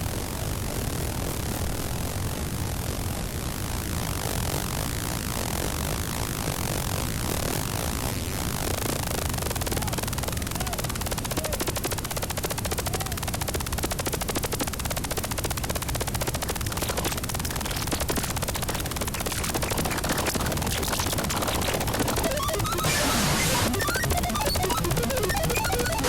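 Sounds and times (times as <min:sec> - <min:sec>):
rapid stream of electronic clicks: 0:09.6 - 0:26.0.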